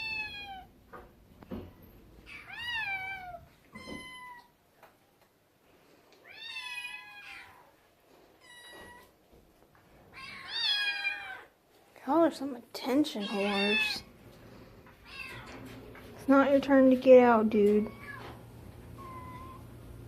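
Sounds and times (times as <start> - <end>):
cats meowing: 0.0 - 0.7, 2.2 - 4.5, 6.2 - 7.8, 8.4 - 9.2, 10.0 - 11.6, 13.2 - 14.1, 15.0 - 15.7, 17.8 - 19.8.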